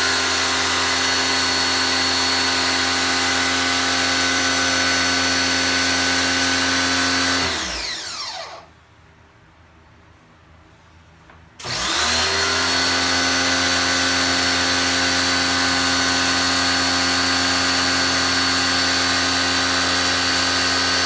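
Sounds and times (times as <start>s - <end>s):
electric tool motor spinning down: 0.0s - 8.7s, 11.6s - 21.0s.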